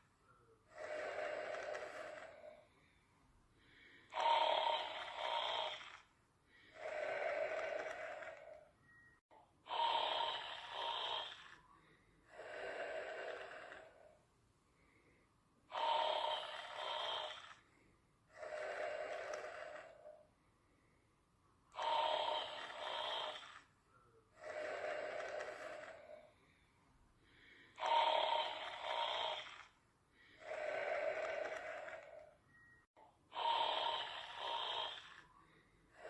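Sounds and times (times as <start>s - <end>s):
soft breathing: 0.0s - 36.0s
snoring: 0.7s - 2.7s, 3.8s - 8.7s, 9.7s - 14.2s, 15.7s - 17.7s, 18.3s - 20.2s, 21.7s - 23.7s, 24.4s - 26.3s, 27.7s - 32.4s, 33.3s - 36.0s.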